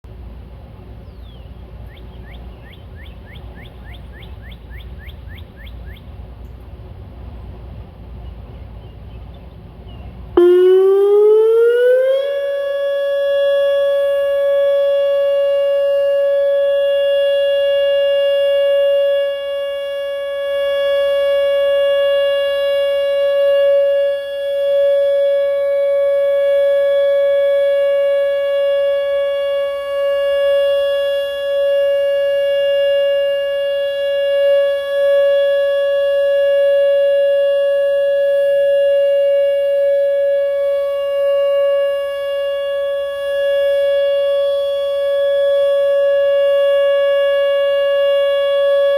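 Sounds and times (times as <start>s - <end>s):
warning siren steady tone: 10.3s - 48.9s.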